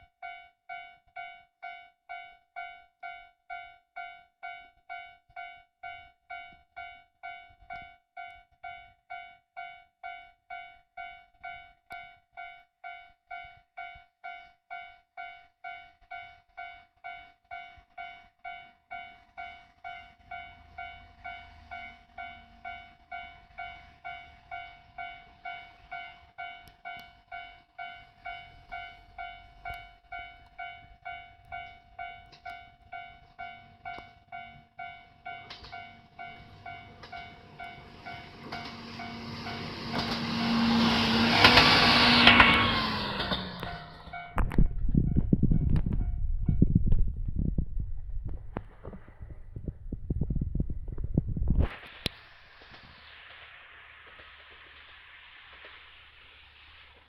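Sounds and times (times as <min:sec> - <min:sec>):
level crossing warning bell: 0:00.0 - 0:46.6
diesel railcar rumble: 0:19.2 - 0:56.4.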